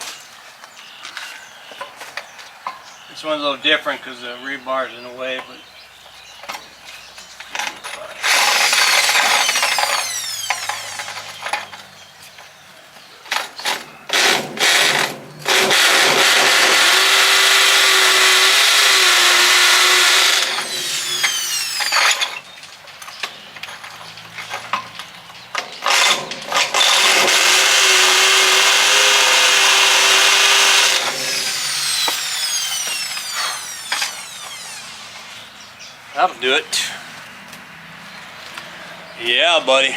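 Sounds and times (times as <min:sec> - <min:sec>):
knocks and scraping: 0:06.4 - 0:12.5, 0:19.7 - 0:28.7, 0:29.5 - 0:35.6
hammer drill boring into concrete: 0:08.2 - 0:11.6, 0:14.1 - 0:22.4, 0:25.9 - 0:35.4.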